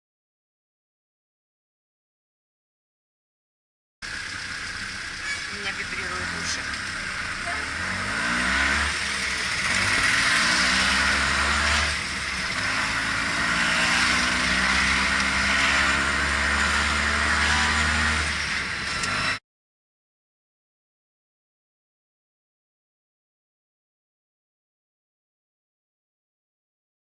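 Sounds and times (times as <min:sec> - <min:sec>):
road and wind noise: 0:04.0 - 0:19.4
vehicle engine accelerating: 0:04.0 - 0:19.4.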